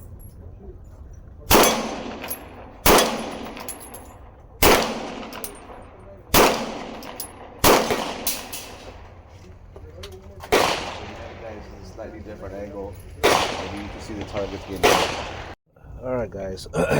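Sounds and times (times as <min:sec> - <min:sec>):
pistol shots echoing: 0:01.5 - 0:09.3, 0:10.4 - 0:12.0, 0:13.1 - 0:15.6
rounds pinging on steel targets: 0:01.5 - 0:09.4, 0:10.4 - 0:15.6.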